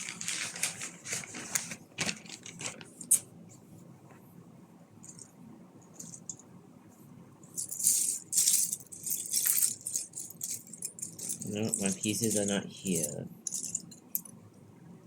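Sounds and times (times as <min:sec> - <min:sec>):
plastic bags rustling: 0:00.0 - 0:03.2
plastic pieces rattling in bags: 0:00.0 - 0:03.2, 0:07.6 - 0:13.9.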